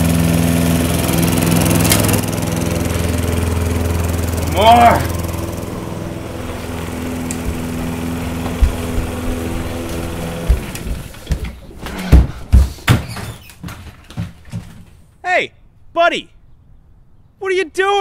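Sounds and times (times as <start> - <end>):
lawn mower engine running: 0.0 - 11.4
loud thumps: 6.5 - 14.9.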